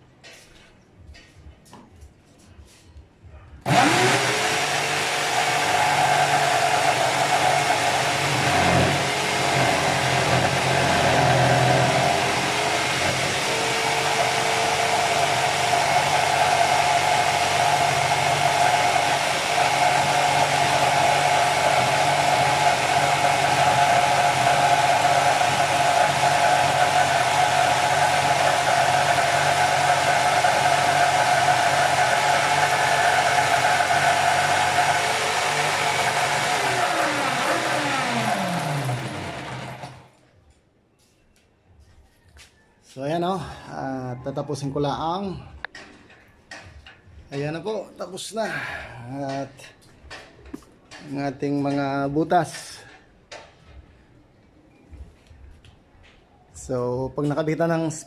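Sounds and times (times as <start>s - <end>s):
power tool cutting wood: 3.7s - 40.1s.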